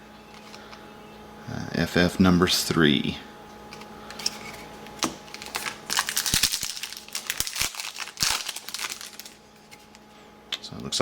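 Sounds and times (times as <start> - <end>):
cards being handled: 3.7 - 10.0
foil wrapper crinkling: 4.1 - 10.0.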